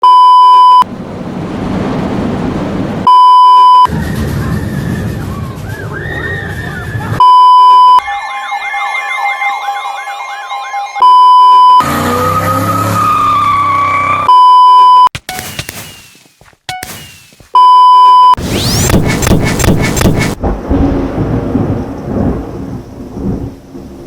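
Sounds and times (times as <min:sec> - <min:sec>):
loud steady beep tone: 0:00.0 - 0:00.8, 0:03.1 - 0:03.9, 0:07.2 - 0:11.9, 0:14.3 - 0:15.5, 0:17.6 - 0:20.2
rushing noise: 0:00.9 - 0:03.1, 0:18.4 - 0:20.6
electronic siren yelping: 0:03.4 - 0:16.1, 0:18.0 - 0:20.4
faint wavering siren: 0:03.8 - 0:14.3, 0:18.4 - 0:19.2.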